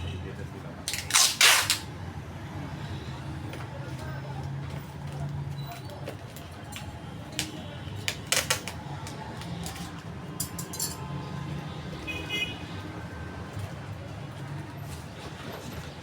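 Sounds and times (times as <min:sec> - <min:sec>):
clicks and clatter of items: 0:00.9 - 0:01.8, 0:04.7 - 0:11.0.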